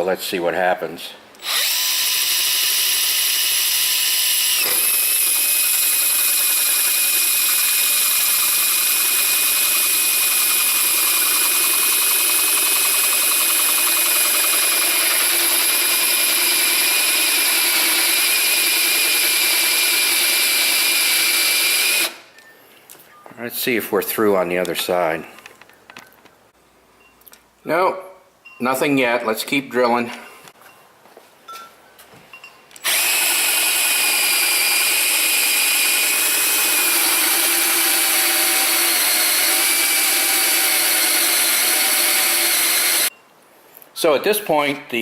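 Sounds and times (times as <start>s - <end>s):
electric drill boring wood: 1.4s - 22.3s, 32.8s - 43.1s.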